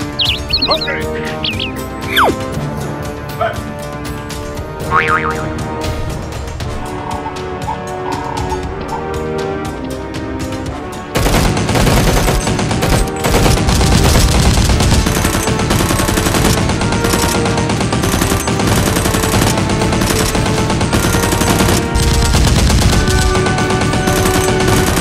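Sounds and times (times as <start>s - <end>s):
music: 0.0s - 25.0s
machine-gun fire: 11.2s - 25.0s.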